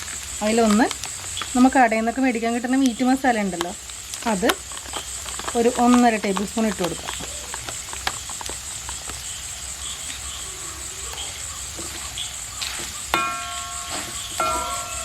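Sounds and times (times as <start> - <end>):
meat sizzling in a pan: 0.0 - 5.7
metal spoon clanging on pan: 13.2 - 15.0.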